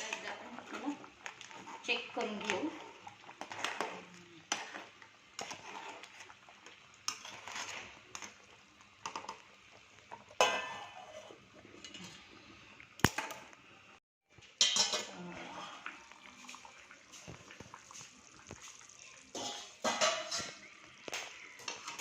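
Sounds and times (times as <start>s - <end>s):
metal spoon scraping a pot: 0.0s - 6.4s, 7.0s - 9.4s, 10.4s - 12.4s, 19.3s - 22.0s.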